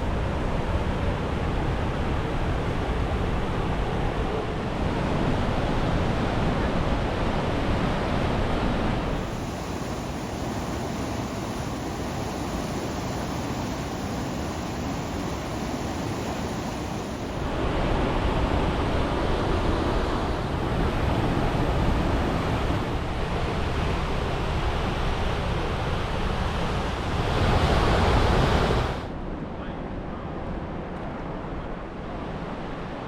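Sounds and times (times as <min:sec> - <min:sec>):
steady rushing noise: 0:00.0 - 0:29.5.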